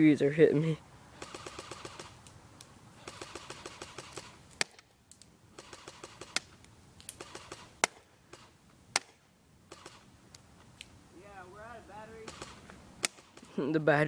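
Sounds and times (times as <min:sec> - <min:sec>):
airsoft gun full-auto bursts: 0:01.2 - 0:02.2, 0:03.0 - 0:04.4, 0:05.6 - 0:06.4, 0:07.2 - 0:08.6, 0:09.7 - 0:10.1, 0:12.2 - 0:13.6
sharp single clicks: 0:01.2 - 0:10.9, 0:12.2 - 0:13.6.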